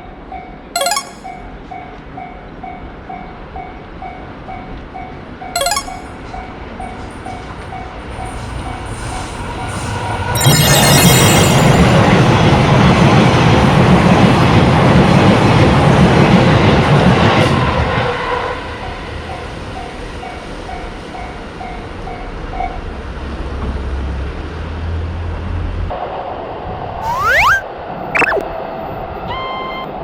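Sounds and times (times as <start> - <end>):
level crossing warning bell: 10.4 - 12.3.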